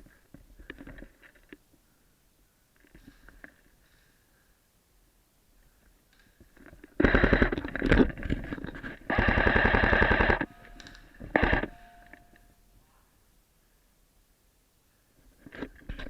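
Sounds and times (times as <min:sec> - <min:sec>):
airsoft gun firing bursts: 0:07.0 - 0:07.6, 0:09.1 - 0:10.6, 0:11.3 - 0:11.8.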